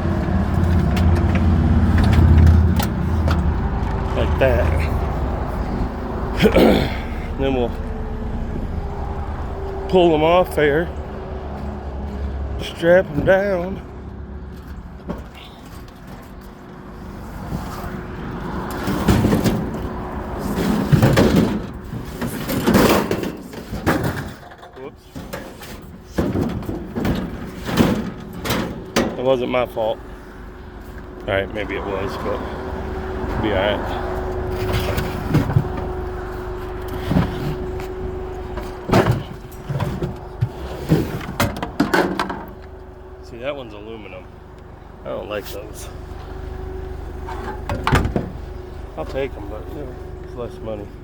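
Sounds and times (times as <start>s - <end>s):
metal units clunking: 0.0s - 13.9s, 18.5s - 30.0s, 30.8s - 44.2s, 45.3s - 50.9s
forklift engine running: 0.0s - 22.7s, 25.5s - 51.0s
metal scraping and clattering: 18.6s - 29.4s, 33.9s - 42.7s.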